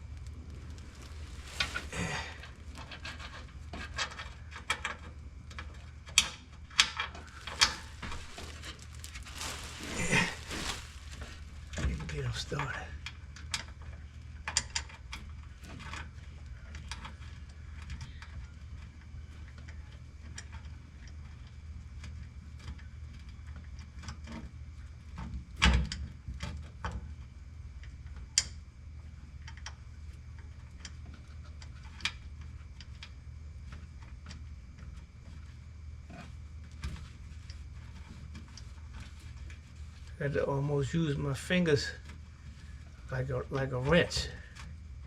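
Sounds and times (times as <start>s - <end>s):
steady low hum: 0.0s - 23.8s.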